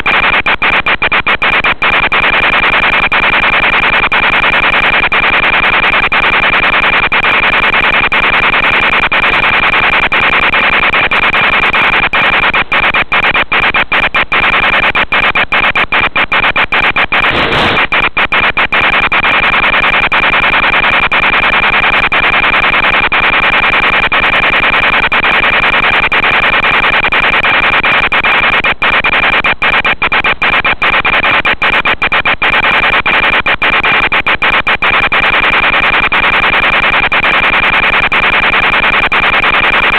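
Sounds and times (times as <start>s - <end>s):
static hiss: 12.8s - 18.7s
thin high whine: 17.1s - 18.0s.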